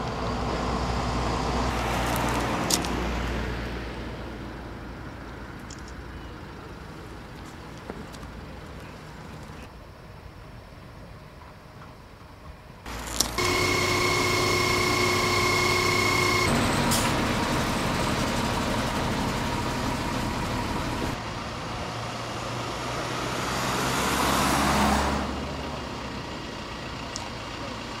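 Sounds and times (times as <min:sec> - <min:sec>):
highway traffic passing: 0:00.0 - 0:09.7, 0:12.9 - 0:28.0
steady whine: 0:12.9 - 0:21.2.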